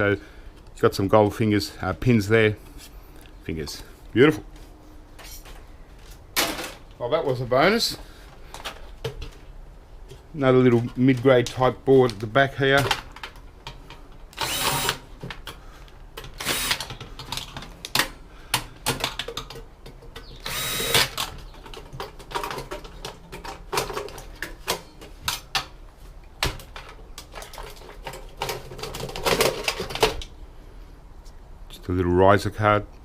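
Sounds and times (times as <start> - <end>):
power driver running: 14.3 - 15.0, 16.4 - 16.9, 20.4 - 21.2.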